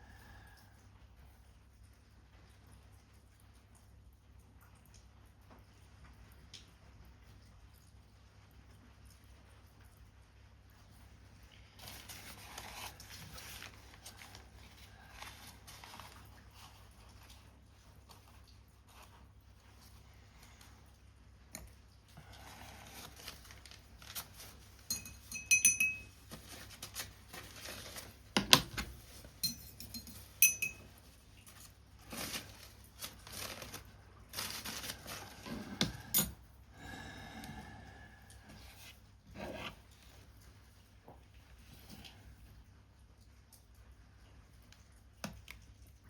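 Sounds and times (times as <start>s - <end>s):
small metal tools clinking: 24.8s - 26.2s, 29.4s - 30.9s.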